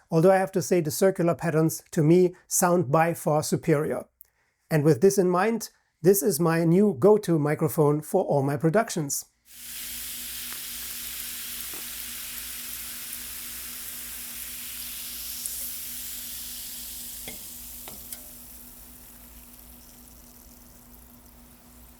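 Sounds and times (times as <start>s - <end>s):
sizzling hiss with crackles: 9.5s - 21.9s.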